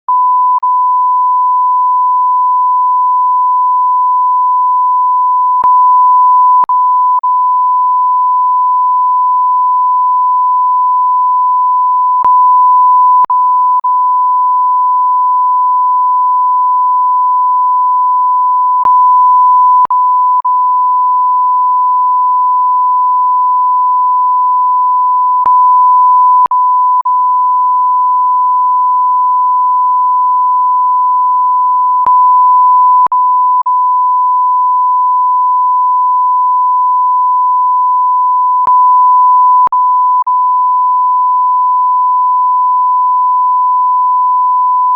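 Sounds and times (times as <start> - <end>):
high-pitched censor bleep tone: 0.0 - 44.9.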